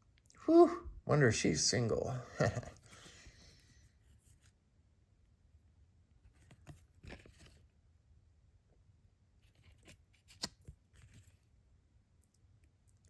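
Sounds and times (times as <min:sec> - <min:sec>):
cards scuffing and clicking: 0:09.5 - 0:11.4.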